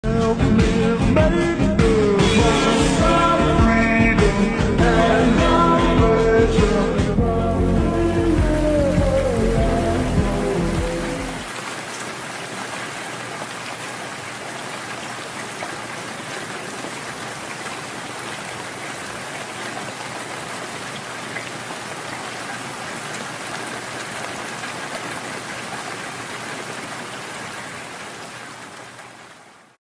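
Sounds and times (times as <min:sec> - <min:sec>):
steady rain falling: 0:07.2 - 0:29.8.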